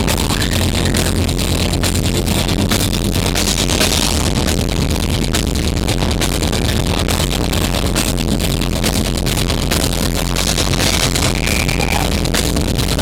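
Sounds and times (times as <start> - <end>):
metal band playing live: 10.5 - 12.5.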